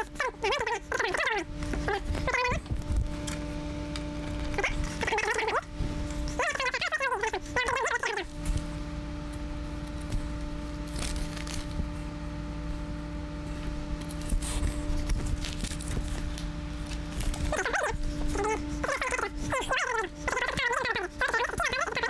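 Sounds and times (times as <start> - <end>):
hands rustling computer cables: 0.0 - 22.0
low electrical hum: 0.0 - 22.0.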